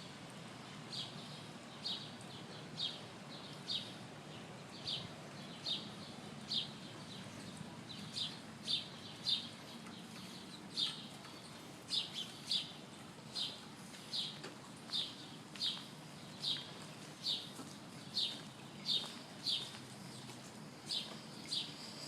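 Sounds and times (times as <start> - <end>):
bird chirping: 4.7 - 20.3.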